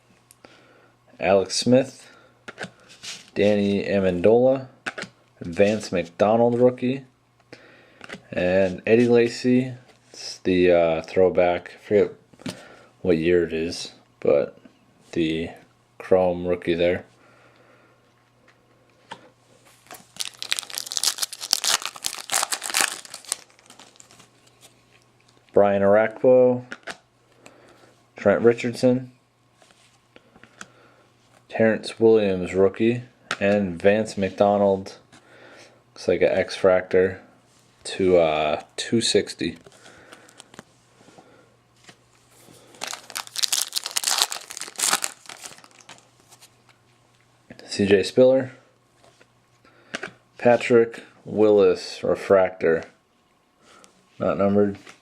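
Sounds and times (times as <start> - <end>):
foil wrapper tearing and crinkling: 19.9 - 24.3, 42.7 - 46.1.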